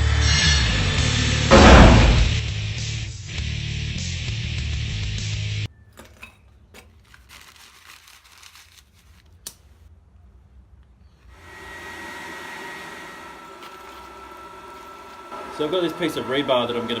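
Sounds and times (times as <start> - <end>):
faint clicks and rustles: 6.0 - 9.9
forge rushing with faint whine: 11.4 - 17.0.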